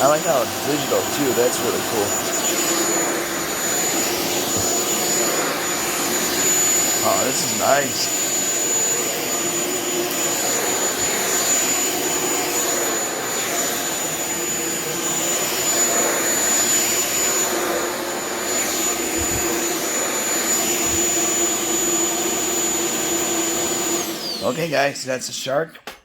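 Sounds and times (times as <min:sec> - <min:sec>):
stick vacuum running on carpet: 0:00.0 - 0:24.7
high vacuum whine: 0:00.0 - 0:24.9.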